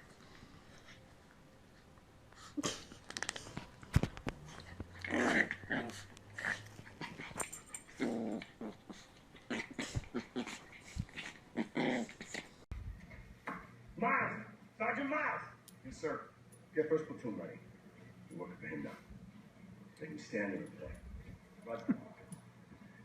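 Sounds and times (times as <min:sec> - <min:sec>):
dog growling: 0:04.4 - 0:12.6.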